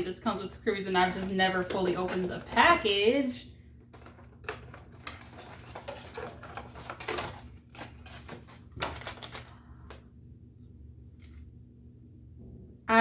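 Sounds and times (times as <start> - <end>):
paper and cardboard rustling: 0.7 - 3.2, 3.9 - 9.5.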